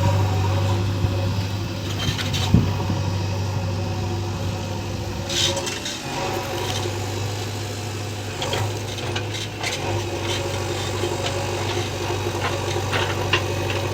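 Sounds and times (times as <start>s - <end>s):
diesel engine running: 0.0s - 13.9s
light metal clanks: 8.4s - 13.9s.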